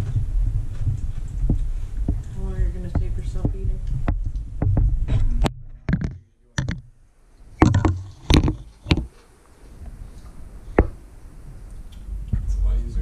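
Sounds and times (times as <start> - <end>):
camera knocking against cabinet: 0.0 - 6.9, 7.6 - 9.1.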